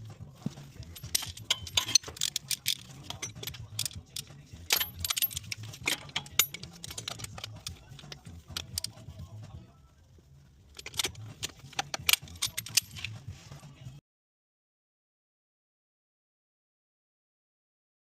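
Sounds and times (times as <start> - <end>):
small metal pieces clinking: 0.8 - 8.9, 10.8 - 13.1.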